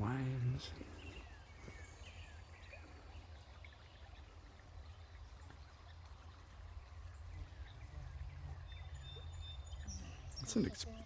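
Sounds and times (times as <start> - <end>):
creek water running: 0.0 - 11.0
low rumble: 6.8 - 10.5
high bird chirps: 7.4 - 11.0.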